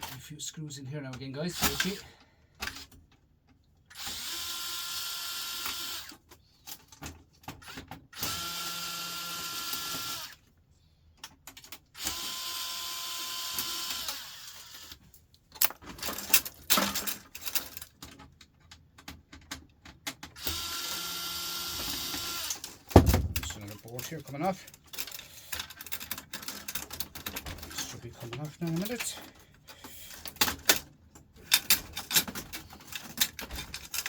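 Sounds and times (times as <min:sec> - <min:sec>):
screws and parts clicking: 0:01.2 - 0:02.0, 0:03.9 - 0:10.4, 0:11.2 - 0:34.0
power drill running: 0:04.0 - 0:06.1, 0:08.2 - 0:10.4, 0:12.0 - 0:14.9, 0:20.4 - 0:22.6.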